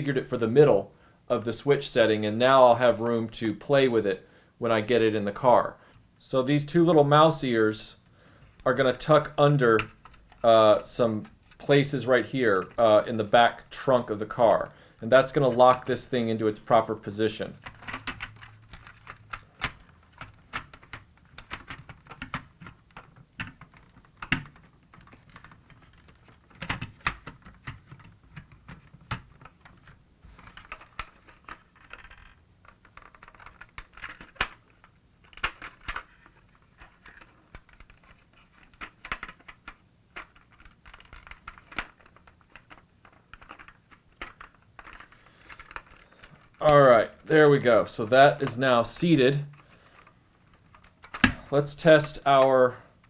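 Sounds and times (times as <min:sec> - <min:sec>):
plastic parts clicking and scraping: 0:16.6 - 0:53.0.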